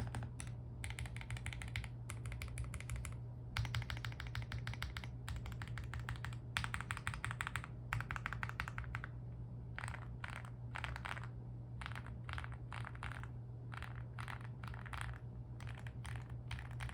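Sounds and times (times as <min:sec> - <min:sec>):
mechanical keyboard key presses: 0:00.0 - 0:09.1.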